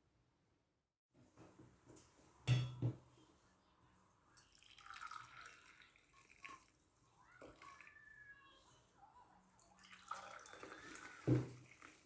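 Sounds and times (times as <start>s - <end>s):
liquid poured into a cup: 4.3s - 8.0s, 9.6s - 12.0s.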